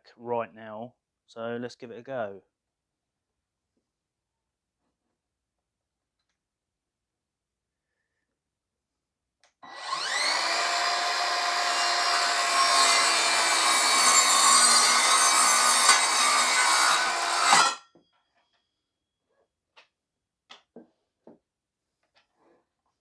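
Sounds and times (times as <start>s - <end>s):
mitre saw cutting wood: 9.6s - 17.8s.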